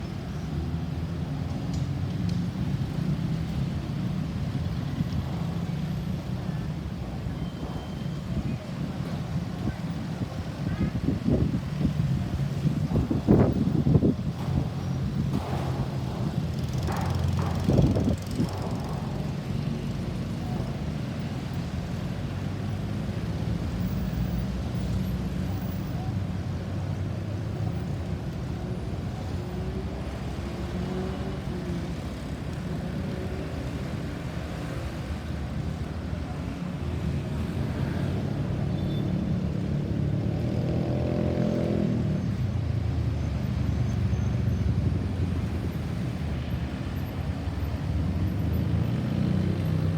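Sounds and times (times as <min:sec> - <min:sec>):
traffic rumble: 0:00.0 - 0:49.9
vehicle approaching: 0:12.0 - 0:25.7, 0:39.4 - 0:49.9.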